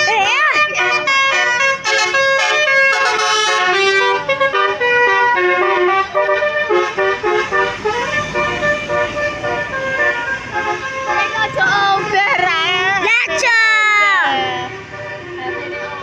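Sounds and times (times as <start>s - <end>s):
bus musical horn tune: 0.0s - 13.4s, 14.3s - 16.0s.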